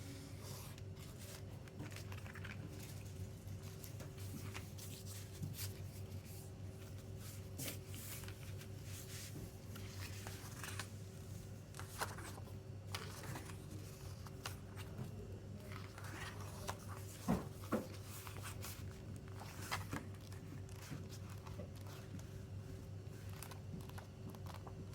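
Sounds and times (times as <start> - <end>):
low electrical hum: 0.0 - 24.9
hands rustling paper packaging: 1.0 - 22.3.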